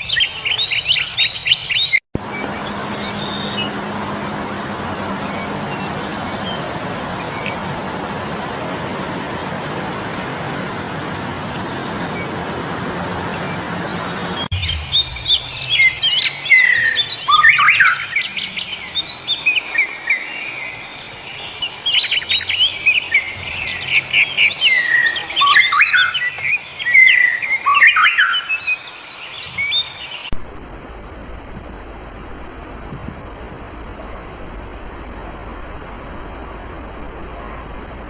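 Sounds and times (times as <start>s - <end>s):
songbirds singing: 0.0s - 30.3s
steady hiss: 2.2s - 14.6s
high thin whine: 2.2s - 16.0s
steady rushing noise: 2.2s - 16.5s, 30.3s - 38.0s.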